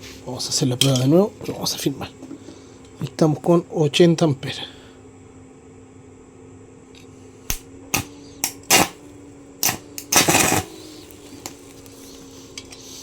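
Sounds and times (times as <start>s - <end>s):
welding arc crackling: 7.5s - 12.0s.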